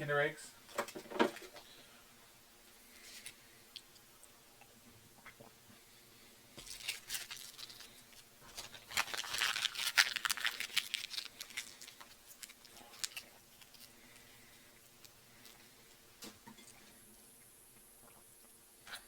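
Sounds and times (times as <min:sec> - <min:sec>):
packaging crinkling and rustling: 0:06.6 - 0:16.8.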